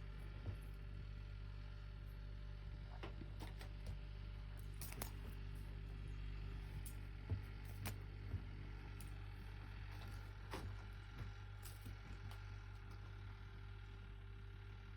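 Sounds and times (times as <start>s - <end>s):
steady low hum: 0.0s - 14.9s.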